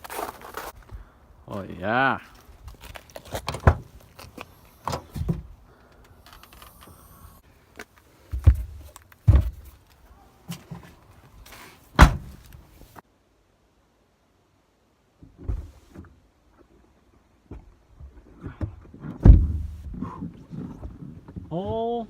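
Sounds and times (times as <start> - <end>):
faint rustling and handling: 0.0 - 13.0
knocks and thumps: 8.3 - 9.8, 18.4 - 21.9.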